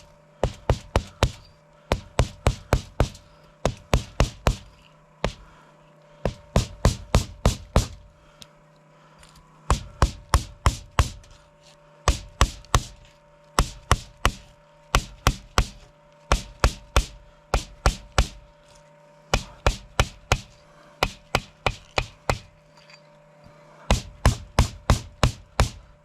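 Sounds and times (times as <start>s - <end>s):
hard chopping blows: 0.0s - 5.6s, 9.7s - 11.4s, 12.1s - 13.0s, 13.6s - 18.4s, 19.3s - 22.5s, 23.9s - 25.8s
faint steady hum: 0.0s - 26.0s.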